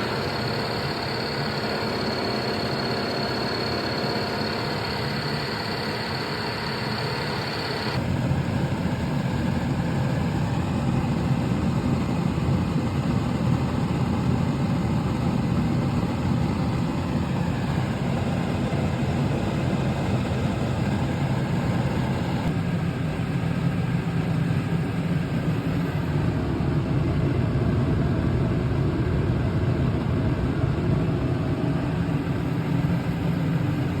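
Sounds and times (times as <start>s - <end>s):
high whine: 0.0s - 8.1s
dehumidifier fan and compressor hum: 0.0s - 34.0s.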